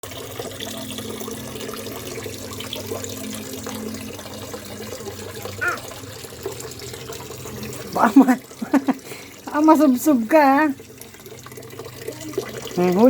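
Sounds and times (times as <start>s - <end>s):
water running from a tap: 0.0s - 13.0s
short high-pitched voice: 5.6s - 5.9s.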